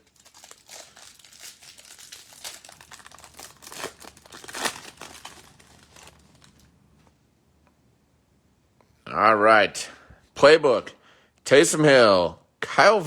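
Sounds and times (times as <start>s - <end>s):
plastic wrapping crinkling and tearing: 0.0s - 6.8s.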